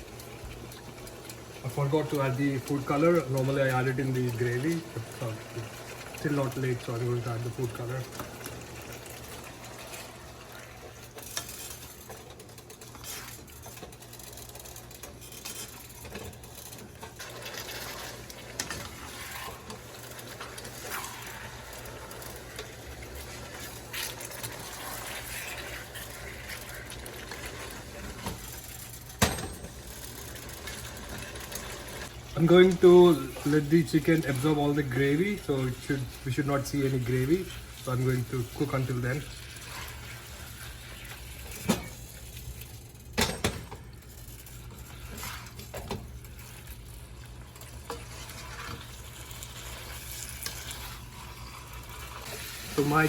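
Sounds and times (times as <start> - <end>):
gravy bubbling in a pan: 0.0 - 53.0
spoon scraping a pan: 8.2 - 29.2, 29.8 - 42.5, 44.2 - 46.8, 47.4 - 53.0.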